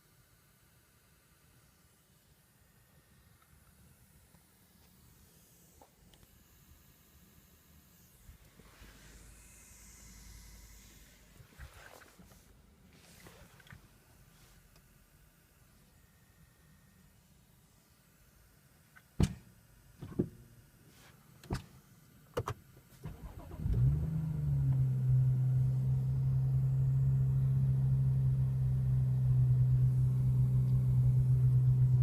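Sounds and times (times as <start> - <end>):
car engine starting and idling: 23.0 - 32.0.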